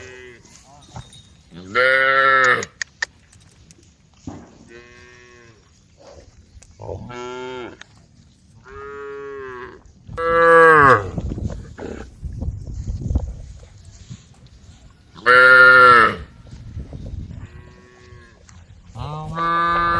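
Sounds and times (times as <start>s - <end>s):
cows mooing: 1.5s - 2.8s, 8.6s - 12.1s, 15.2s - 16.3s, 17.4s - 19.9s.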